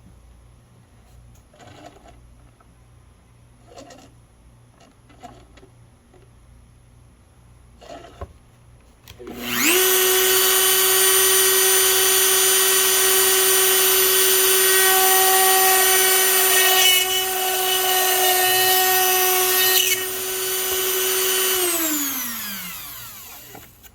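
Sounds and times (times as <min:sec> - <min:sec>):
rotary tool whining: 0:09.2 - 0:23.9.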